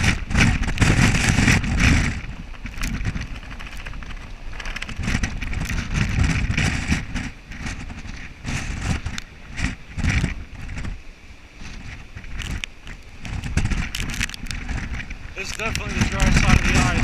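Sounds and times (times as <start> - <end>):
wind gusting on microphone: 0.0 - 17.0.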